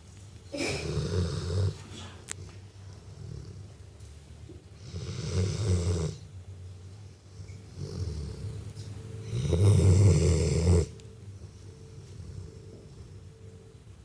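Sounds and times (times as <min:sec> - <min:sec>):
dog snoring: 0:00.6 - 0:03.8, 0:04.8 - 0:06.3, 0:07.3 - 0:13.5.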